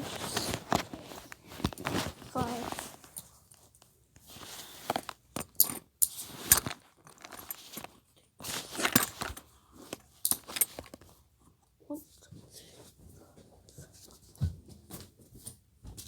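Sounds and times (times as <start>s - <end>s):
rustling: 0.0s - 5.2s.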